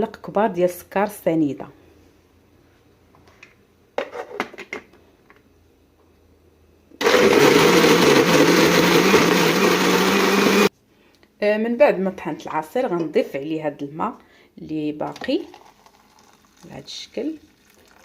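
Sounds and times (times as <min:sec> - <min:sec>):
electric blender running: 0:07.0 - 0:10.7.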